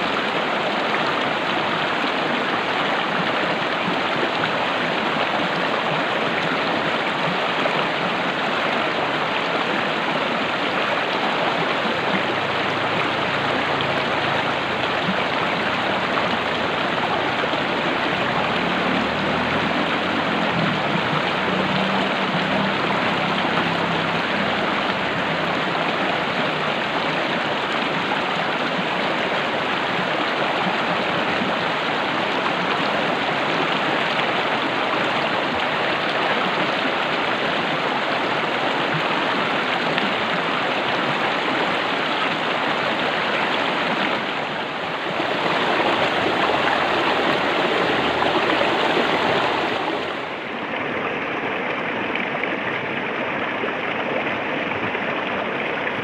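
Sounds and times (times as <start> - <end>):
stream water flowing: 0.0 - 56.0.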